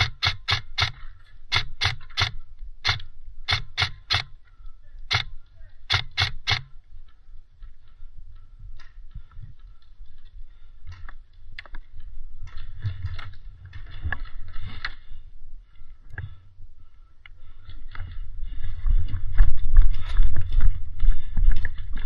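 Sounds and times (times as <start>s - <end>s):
sharp clicks: 0.0s - 4.4s, 5.0s - 6.8s.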